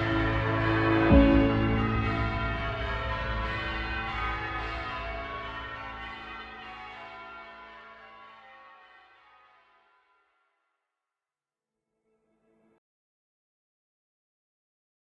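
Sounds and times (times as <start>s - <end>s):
church bells ringing: 0.0s - 8.0s.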